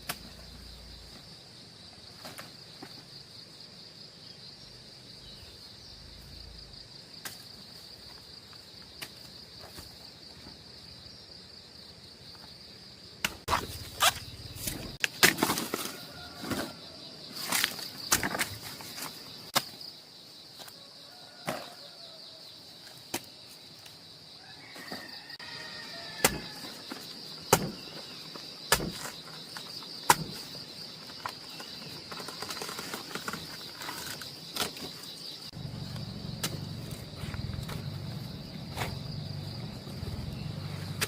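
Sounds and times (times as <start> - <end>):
sharp knocks: 27.5 - 27.8.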